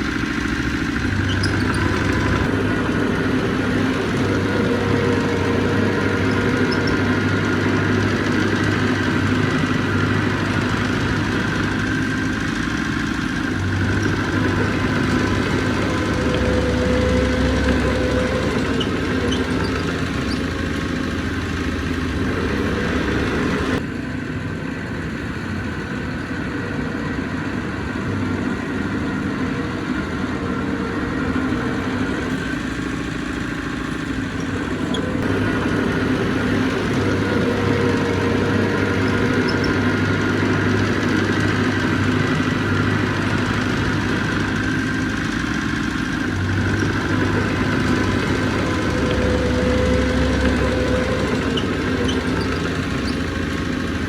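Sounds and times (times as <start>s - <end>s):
heavy diesel engine running: 0.0s - 54.0s.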